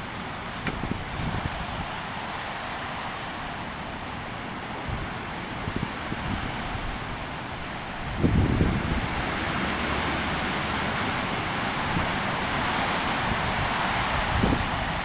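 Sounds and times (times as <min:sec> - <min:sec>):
wind gust buffeting microphone: 0:07.9 - 0:10.4, 0:13.2 - 0:15.0
strong wind rushing: 0:08.0 - 0:10.1, 0:13.2 - 0:15.0.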